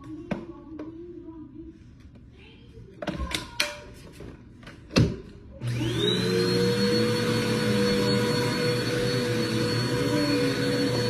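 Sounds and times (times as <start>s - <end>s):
vacuum cleaner motor whine: 5.6s - 11.0s.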